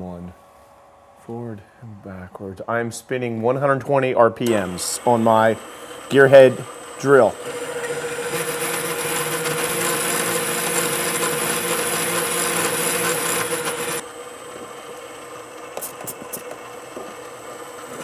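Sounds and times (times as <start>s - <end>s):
drill press running: 4.4s - 18.0s
hole saw grinding into steel: 4.5s - 14.0s.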